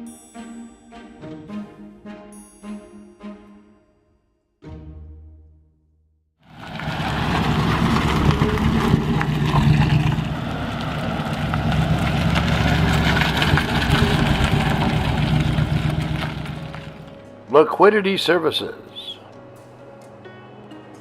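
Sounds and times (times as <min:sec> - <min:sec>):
car engine running: 0:06.5 - 0:17.2.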